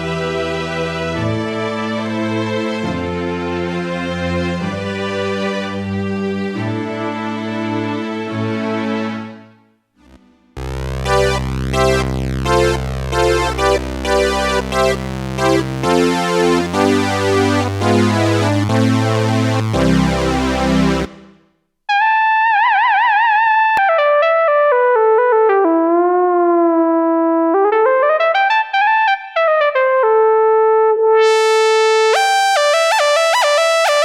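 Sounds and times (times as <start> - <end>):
organ synthesizer chords: 10.0 - 21.4, 27.4 - 34.0
synth lead line with vibrato: 10.6 - 23.2, 31.0 - 34.0.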